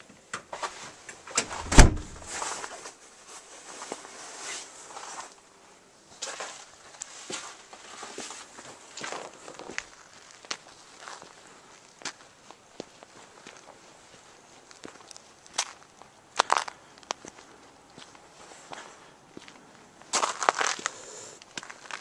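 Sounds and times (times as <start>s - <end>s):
door banging shut: 1.4s - 2.4s
footsteps crunching in snow: 6.2s - 22.0s.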